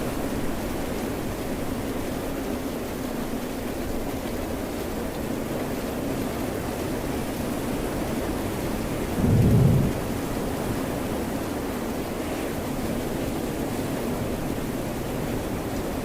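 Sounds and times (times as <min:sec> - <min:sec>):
steady rain: 0:00.0 - 0:16.0
deep rumble: 0:09.2 - 0:10.2.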